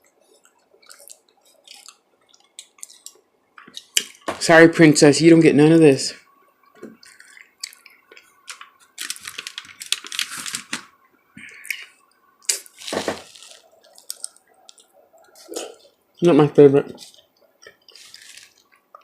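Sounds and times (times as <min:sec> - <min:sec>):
person chewing with wet mouth sounds: 0:00.1 - 0:04.3, 0:07.0 - 0:09.0, 0:11.4 - 0:16.0, 0:17.0 - 0:19.0.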